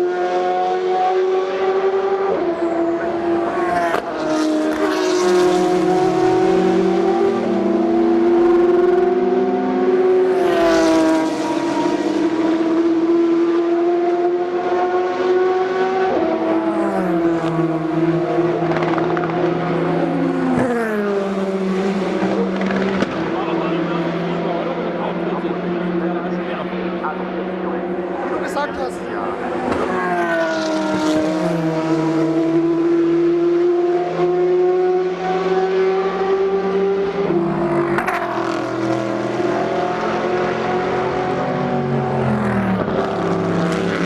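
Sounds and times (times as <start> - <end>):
race cars accelerating past: 0.0 - 44.0.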